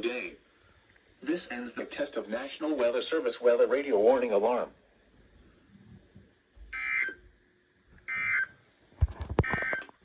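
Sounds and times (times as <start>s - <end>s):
short data bursts: 6.8s - 7.2s, 8.1s - 8.6s.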